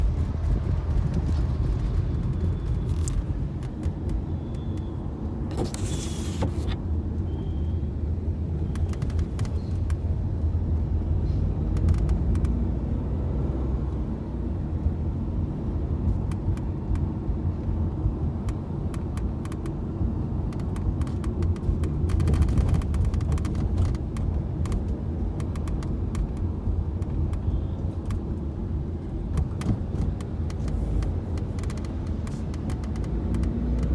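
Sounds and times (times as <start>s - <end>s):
road and engine rumble: 0.0s - 33.9s.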